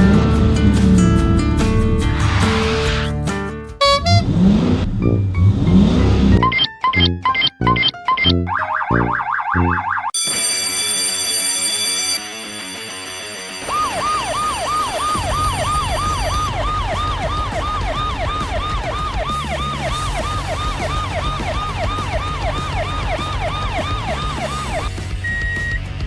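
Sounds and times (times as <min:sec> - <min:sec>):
low rumble: 0:00.0 - 0:06.4
emergency siren sweeping: 0:02.0 - 0:03.1, 0:03.8 - 0:06.4, 0:13.6 - 0:24.9.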